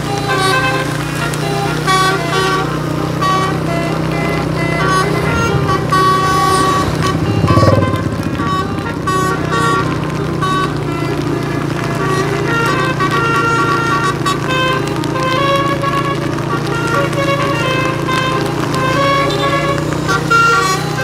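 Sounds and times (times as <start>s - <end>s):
bus engine humming: 0.0s - 21.0s
musical bus air horn: 0.0s - 21.0s
low rumble: 5.2s - 9.3s.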